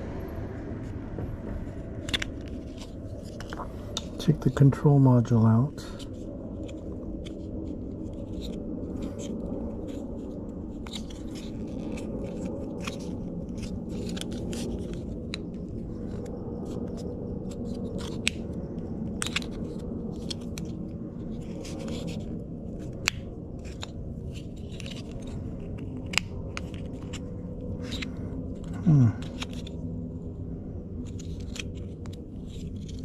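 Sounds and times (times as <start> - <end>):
steady low hum: 0.0 - 33.0
plastic parts clicking and scraping: 8.1 - 18.5, 19.1 - 29.8, 31.0 - 33.0.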